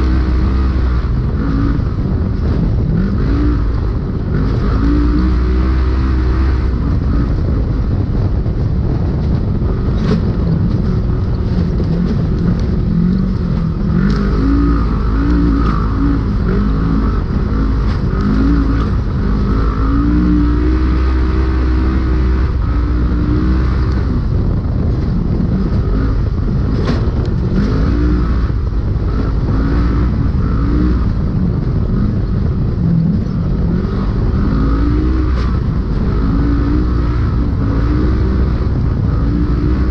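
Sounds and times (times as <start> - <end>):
engine revving under load: 0.0 - 39.9.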